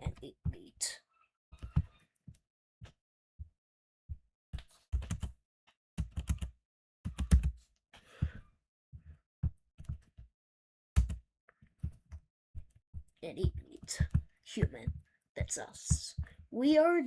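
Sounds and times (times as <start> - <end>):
keyboard keys clicking: 7.1 - 7.5
person breathing: 8.0 - 8.6.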